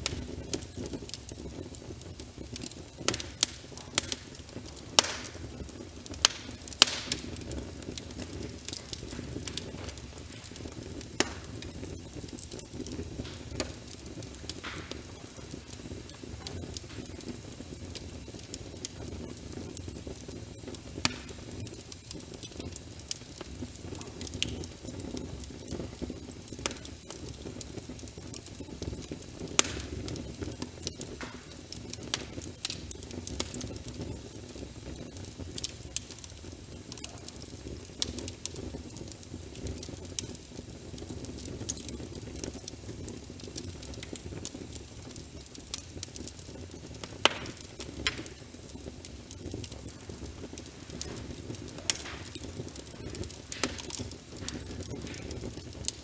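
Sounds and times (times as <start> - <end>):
wood fire crackling: 0.0 - 56.0
rain rushing: 49.7 - 56.0.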